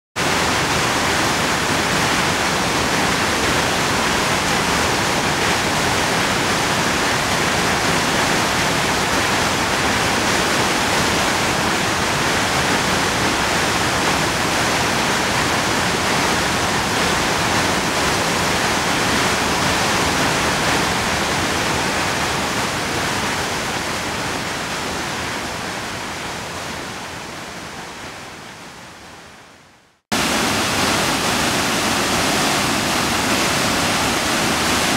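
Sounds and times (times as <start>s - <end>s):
waterfall rushing: 0.2s - 29.2s, 30.1s - 34.9s.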